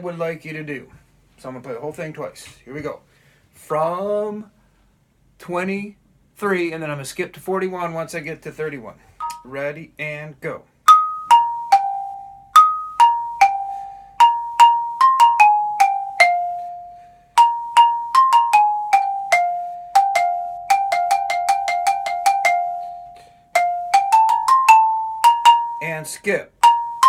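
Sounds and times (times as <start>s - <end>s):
mallet keyboard melody: 9.2s - 9.5s, 10.9s - 27.0s.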